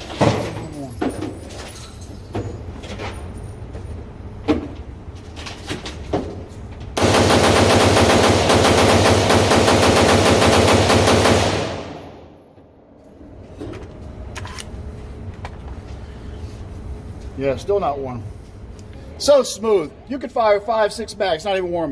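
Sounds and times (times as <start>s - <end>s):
rifle rapid fire: 7.0s - 12.4s.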